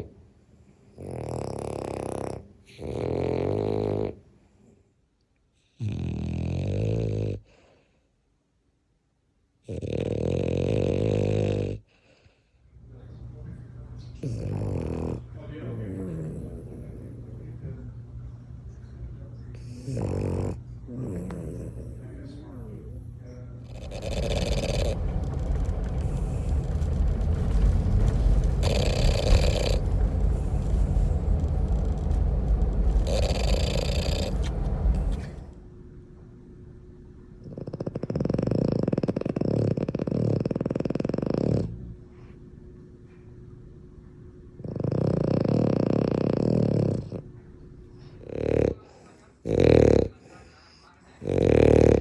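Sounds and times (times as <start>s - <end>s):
dog snoring: 0.9s - 4.3s, 5.6s - 7.9s, 9.6s - 12.5s, 14.1s - 17.6s, 19.5s - 35.6s, 37.4s - 42.3s, 44.6s - 47.3s, 48.0s - 52.0s.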